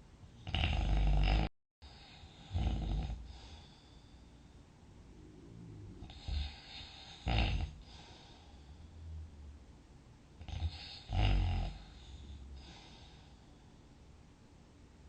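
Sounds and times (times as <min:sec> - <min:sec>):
person snoring: 0:00.4 - 0:03.6, 0:05.2 - 0:09.2, 0:10.5 - 0:13.0.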